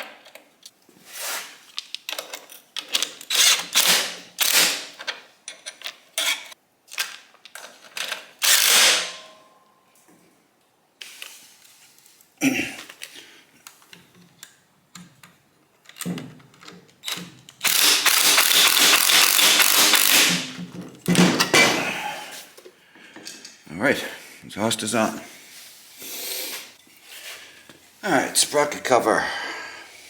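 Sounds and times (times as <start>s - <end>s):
ratchet rasping: 17.6s - 20.5s.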